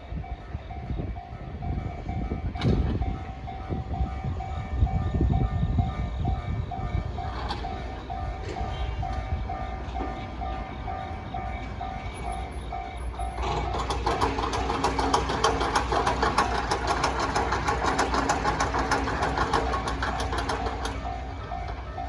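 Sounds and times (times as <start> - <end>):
level-crossing warning bell: 0.0 - 22.0
train wheels clattering on rails: 0.0 - 22.0.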